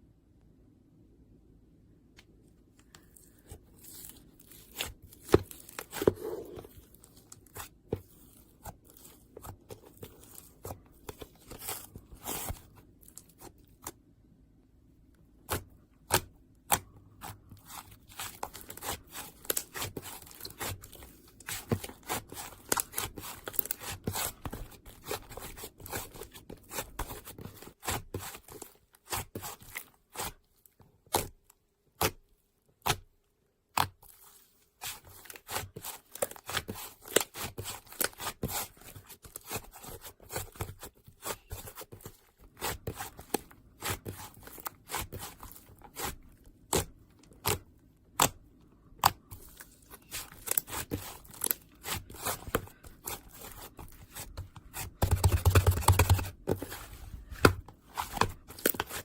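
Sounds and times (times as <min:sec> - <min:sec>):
clicks scrapes and rustling: 0:49.0 - 0:59.0.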